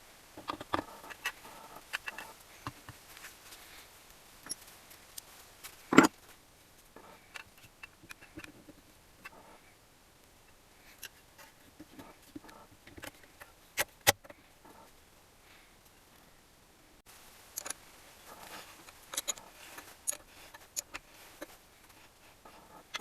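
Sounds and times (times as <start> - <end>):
tools clicking and tapping: 17.6 - 17.8, 18.8 - 21.6.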